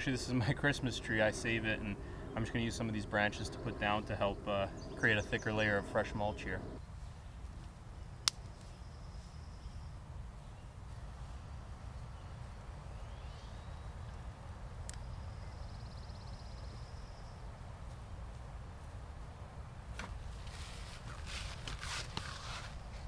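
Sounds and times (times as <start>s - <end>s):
low outdoor rumble: 0.0s - 8.1s
dry branches crackling: 20.2s - 23.0s.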